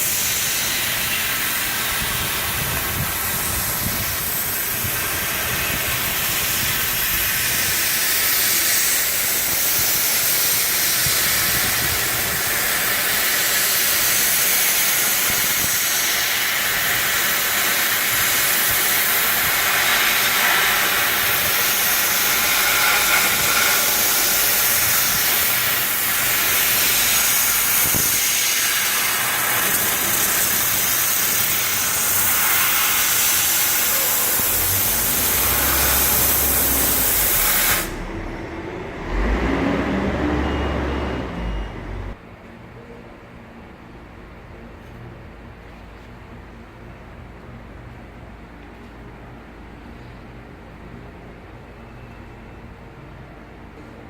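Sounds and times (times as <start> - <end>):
laser cutter hissing: 0.0 - 38.1.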